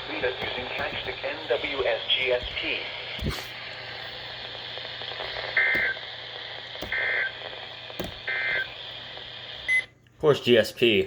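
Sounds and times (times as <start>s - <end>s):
radio hiss and hum: 0.0s - 11.0s
buzzy two-tone data bursts: 5.1s - 9.0s.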